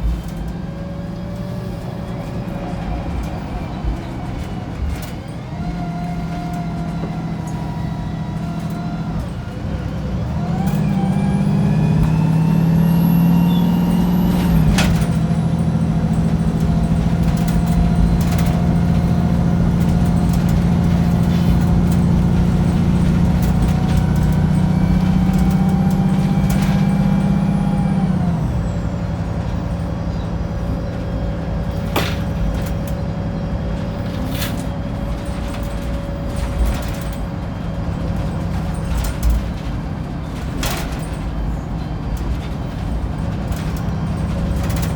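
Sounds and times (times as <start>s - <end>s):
bus engine accelerating: 0.0s - 44.9s.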